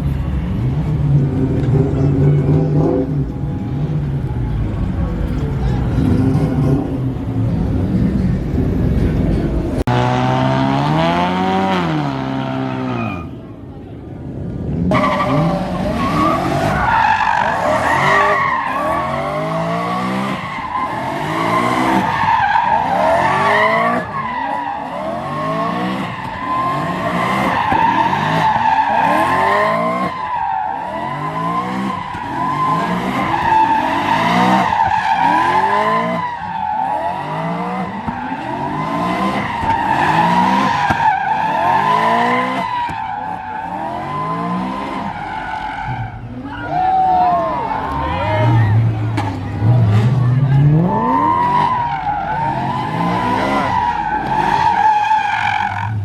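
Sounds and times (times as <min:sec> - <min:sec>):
car engine revving: 0:47.8 - 0:56.0.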